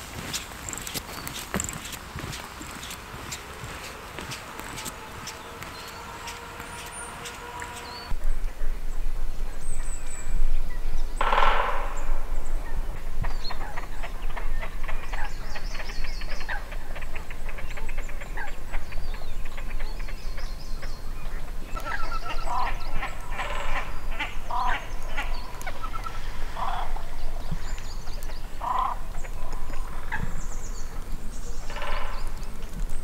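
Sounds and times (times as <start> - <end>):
bird chattering trill: 0.0 - 8.1
harsh honking bird calls: 0.0 - 8.2, 11.2 - 15.3, 21.8 - 27.8, 31.6 - 32.6.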